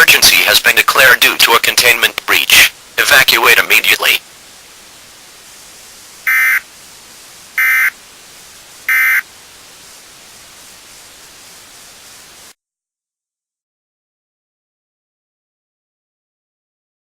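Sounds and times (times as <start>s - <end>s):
static hiss: 0.0s - 12.6s
digital data tone bursts: 6.2s - 6.6s, 7.6s - 8.0s, 8.9s - 9.3s.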